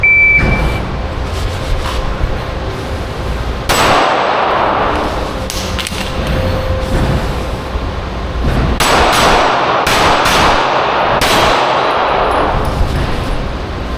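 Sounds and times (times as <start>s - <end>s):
airsoft pistol shots: 3.7s - 5.0s, 8.8s - 12.5s.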